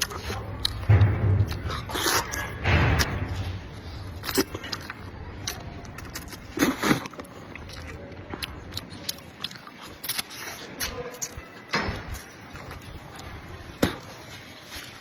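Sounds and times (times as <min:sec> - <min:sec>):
person chewing noodles: 0:00.0 - 0:13.7.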